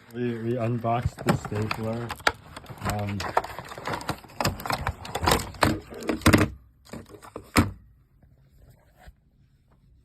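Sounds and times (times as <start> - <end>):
packaging rustling: 0.0 - 6.3.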